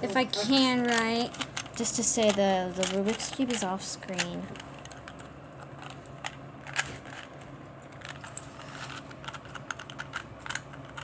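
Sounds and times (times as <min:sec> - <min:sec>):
plastic puzzle cube clicking: 0:08.0 - 0:11.0.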